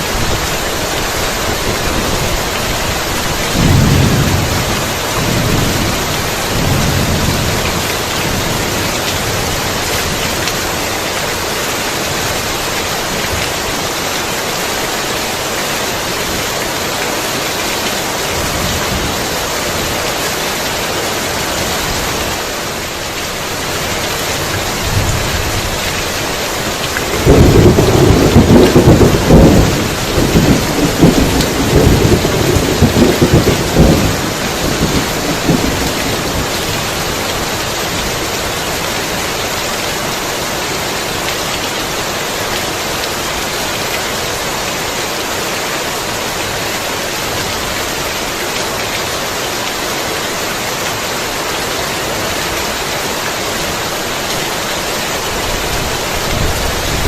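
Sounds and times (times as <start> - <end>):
heavy rain falling: 0.0 - 57.0
rolling thunder: 3.2 - 9.6, 27.0 - 37.3.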